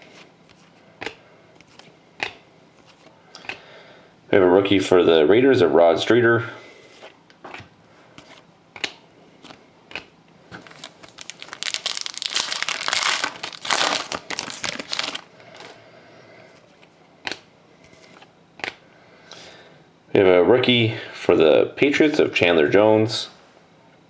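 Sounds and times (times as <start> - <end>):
card pack wrapper crinkling: 10.5 - 15.8.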